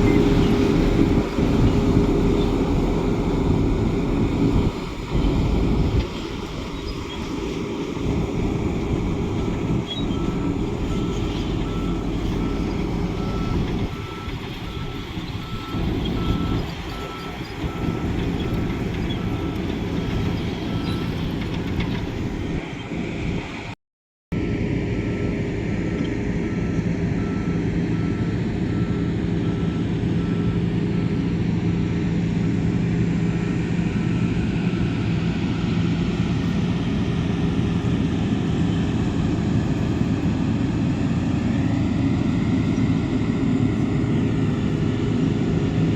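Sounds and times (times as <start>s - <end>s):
heavy machine engine running: 0.0s - 23.7s, 24.4s - 45.9s
reversing alarm beeping: 9.3s - 19.6s, 26.4s - 31.3s.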